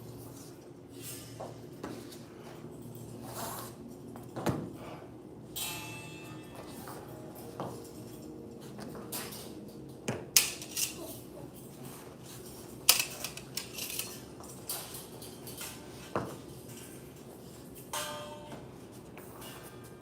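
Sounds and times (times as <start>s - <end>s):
butterfly knives clinking: 10.4s - 11.2s, 12.8s - 15.7s.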